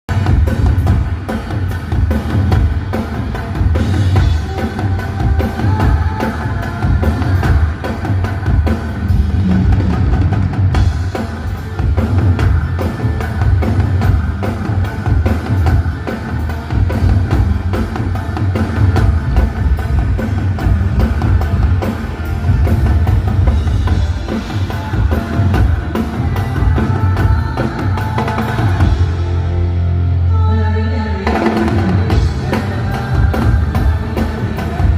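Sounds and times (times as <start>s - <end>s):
live band music: 0.1s - 34.9s
thick bass: 16.9s - 24.3s.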